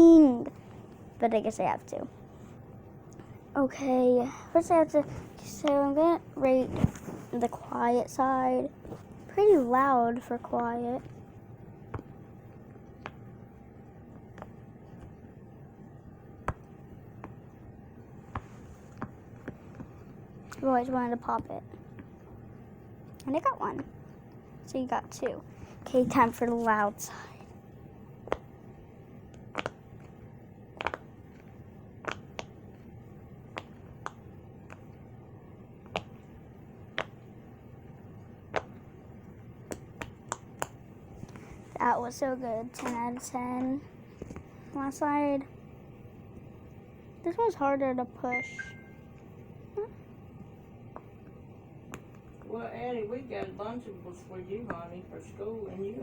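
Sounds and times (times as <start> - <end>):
pop-it fidget toy popping: 29.4 - 30.1, 30.7 - 31.1, 32.0 - 32.6, 36.9 - 37.3
pop-it bubbles clicking: 29.4 - 32.7, 33.4 - 34.9.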